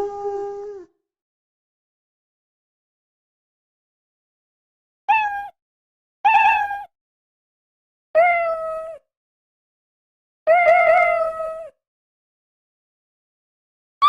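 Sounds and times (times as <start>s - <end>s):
cat meowing: 5.1s - 5.5s, 6.3s - 6.9s, 8.2s - 9.0s.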